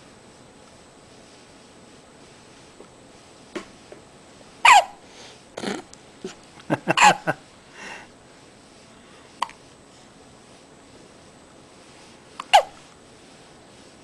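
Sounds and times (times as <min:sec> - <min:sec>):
baby hiccupping: 0:04.6 - 0:05.0, 0:06.9 - 0:07.3, 0:12.4 - 0:12.8.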